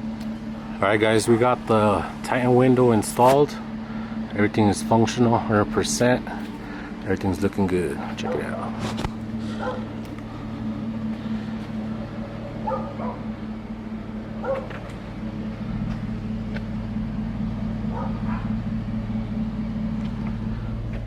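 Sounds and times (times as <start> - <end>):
low hum: 0.0 - 21.0
dog yelping: 9.6 - 9.9, 12.6 - 13.2, 14.4 - 14.8, 17.9 - 18.6.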